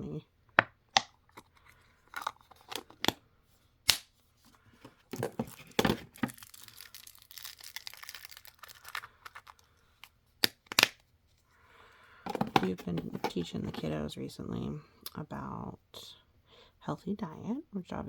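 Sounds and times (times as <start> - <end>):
packaging crinkling and tearing: 5.1 - 11.0.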